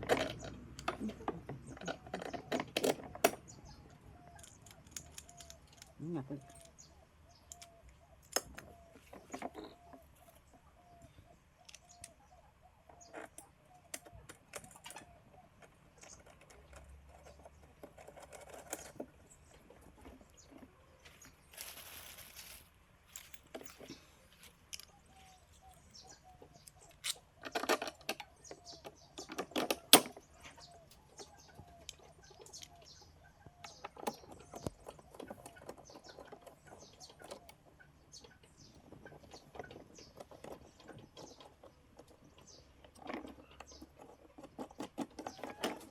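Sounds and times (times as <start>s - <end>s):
parts clicking and clattering: 0.0s - 10.5s, 13.0s - 37.6s
bird calling: 0.0s - 16.6s, 18.7s - 45.9s
rustle: 14.5s - 28.5s.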